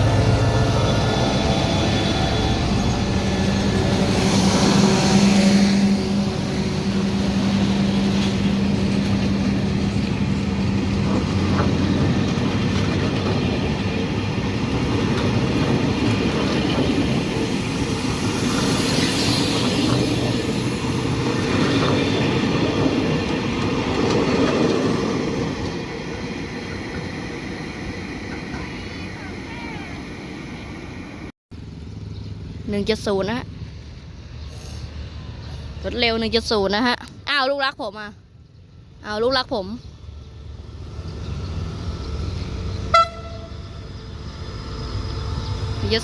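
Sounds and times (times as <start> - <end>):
train wheels on rails: 0.0 - 31.3
train wheel squeal: 0.6 - 7.2.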